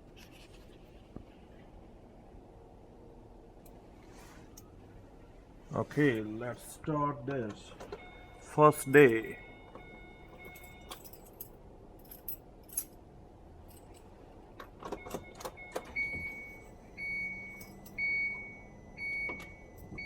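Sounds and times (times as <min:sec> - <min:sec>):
dashboard warning chime: 0:06.9 - 0:11.2, 0:15.0 - 0:20.0
car keys jangling: 0:08.9 - 0:13.0, 0:13.6 - 0:18.1.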